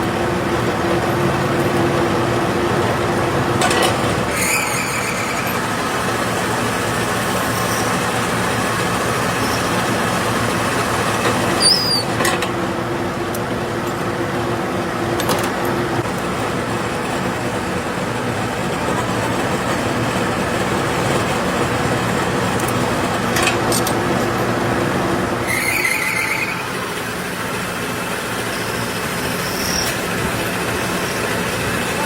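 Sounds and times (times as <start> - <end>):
factory machinery humming: 0.0 - 32.0
high metallic squeak: 4.3 - 5.6, 11.6 - 12.2, 25.4 - 26.8, 29.2 - 30.1.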